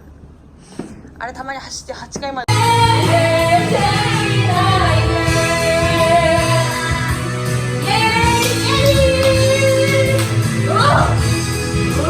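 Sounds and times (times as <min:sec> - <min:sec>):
pop song with woman singing: 0:02.5 - 0:11.3.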